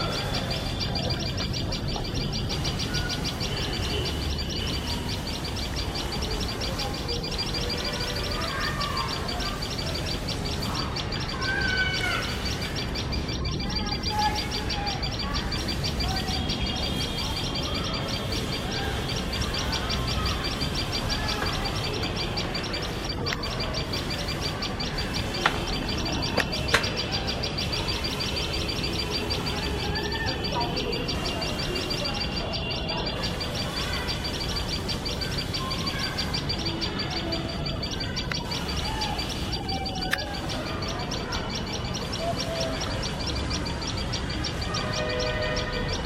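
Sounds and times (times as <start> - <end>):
birds giving shrill alarm calls: 0.0 - 46.0
sharp clicks: 16.6 - 29.6, 32.0 - 44.7.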